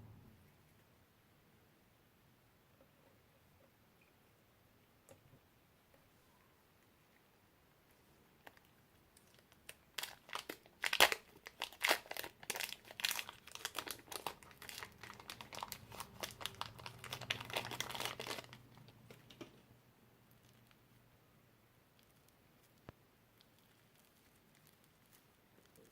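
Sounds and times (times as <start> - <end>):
slime crackling and popping: 8.4 - 18.8, 22.0 - 25.9.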